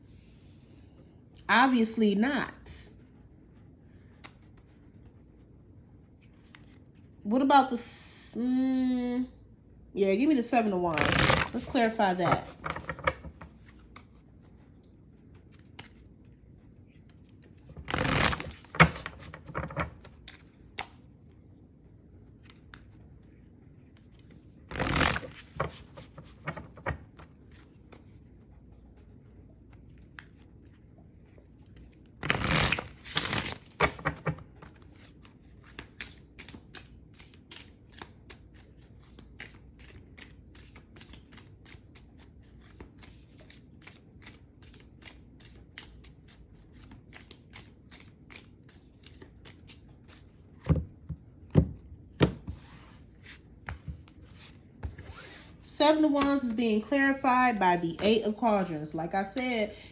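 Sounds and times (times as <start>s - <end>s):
cards being shuffled: 4.0s - 5.4s, 6.1s - 7.1s, 10.9s - 14.6s, 15.2s - 21.4s, 22.2s - 51.6s, 52.9s - 56.6s.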